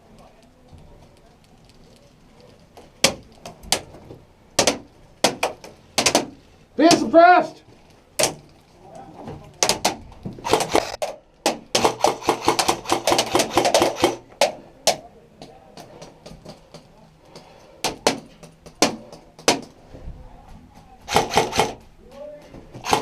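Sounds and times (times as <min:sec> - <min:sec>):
airsoft guns shooting: 0:09.6 - 0:15.0, 0:21.0 - 0:21.8, 0:22.8 - 0:23.0.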